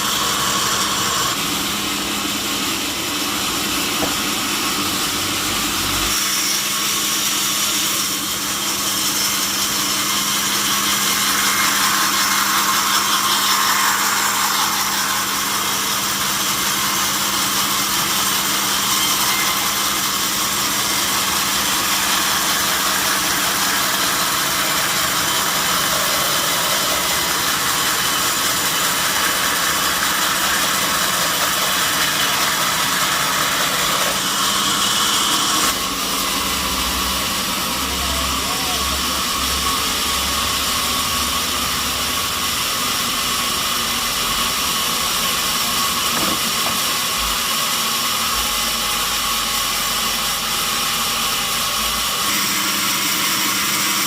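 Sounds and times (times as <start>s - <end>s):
sawmill saw hum: 0.0s - 54.0s
saw cutting log hiss: 4.8s - 39.6s.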